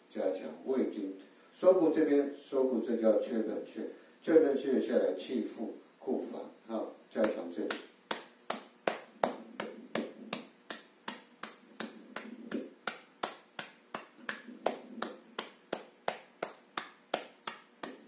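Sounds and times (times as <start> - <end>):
hand slapping chest: 7.2 - 18.0.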